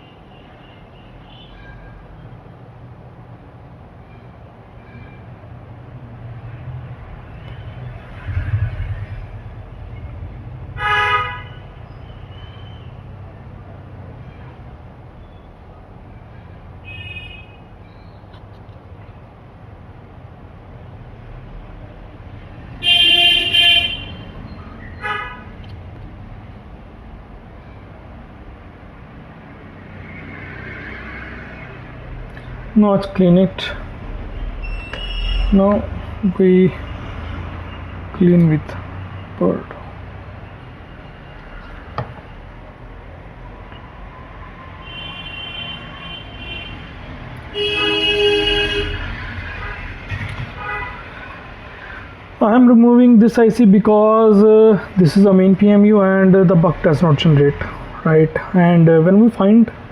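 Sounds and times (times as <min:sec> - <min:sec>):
horn honking: 0:10.8 - 0:11.8, 0:16.3 - 0:17.7, 0:22.8 - 0:24.4, 0:25.0 - 0:25.6, 0:44.8 - 0:51.4.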